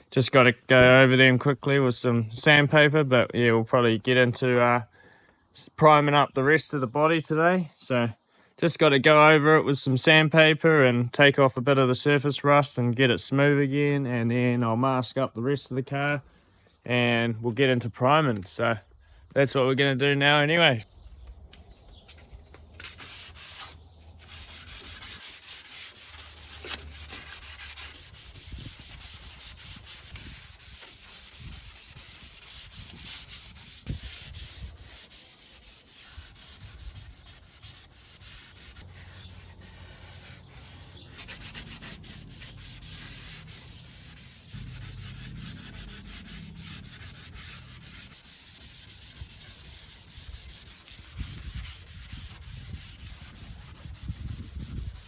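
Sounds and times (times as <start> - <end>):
sandpaper rubbing on metal: 22.8 - 55.0.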